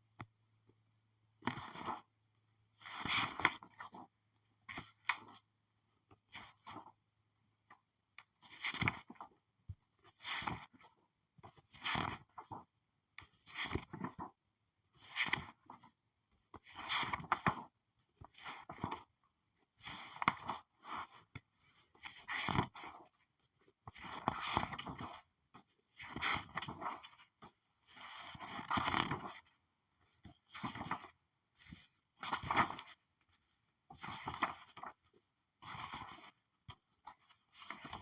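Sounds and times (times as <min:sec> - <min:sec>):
paper pages flipping: 0:30.5 - 0:31.1.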